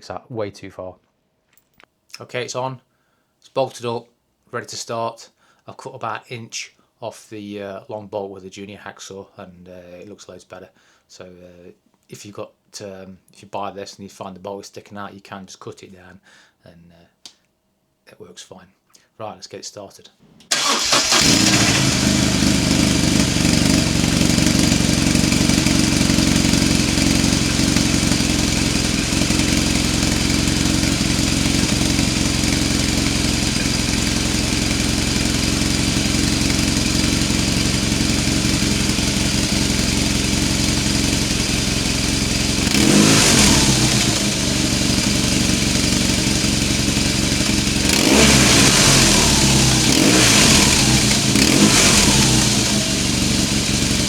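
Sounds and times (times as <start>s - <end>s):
motorcycle engine idling: 20.6s - 54.0s.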